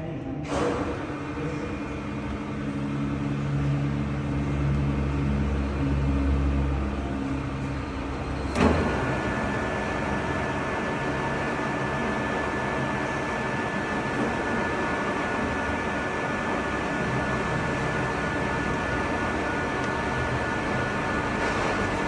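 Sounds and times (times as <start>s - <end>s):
metal lathe humming: 7.1s - 22.0s.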